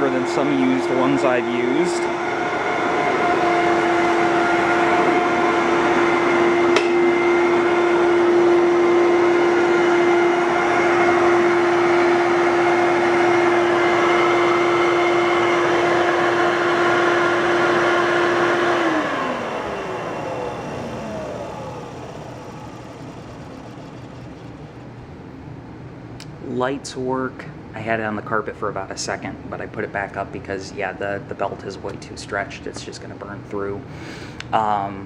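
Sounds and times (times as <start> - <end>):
vacuum cleaner motor whine: 0.0 - 25.0.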